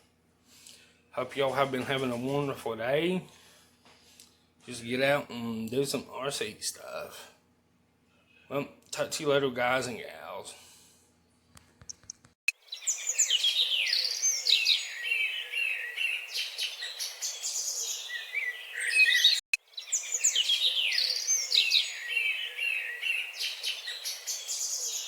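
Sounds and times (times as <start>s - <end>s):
birds chirping and singing: 12.6s - 25.0s.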